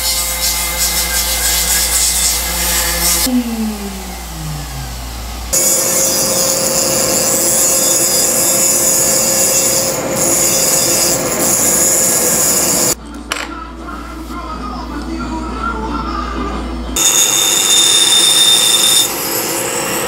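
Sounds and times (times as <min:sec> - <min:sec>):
rotary tool grinding stone: 0:00.0 - 0:03.3, 0:05.6 - 0:13.0, 0:17.0 - 0:20.0.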